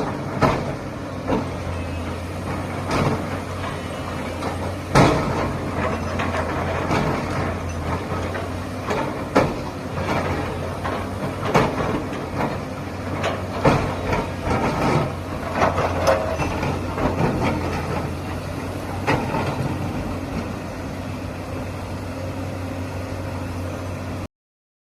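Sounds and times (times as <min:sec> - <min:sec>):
sharp knocks and clanks: 0:00.0 - 0:01.6, 0:02.4 - 0:19.9
excavator diesel engine running: 0:00.0 - 0:24.3.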